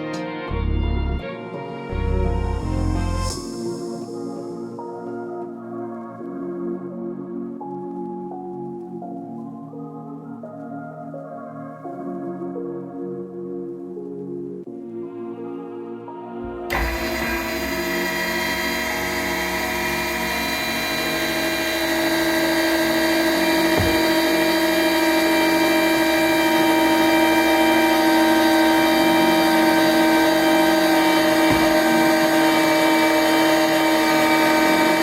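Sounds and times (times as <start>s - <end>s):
electric motor whining: 16.7s - 35.0s.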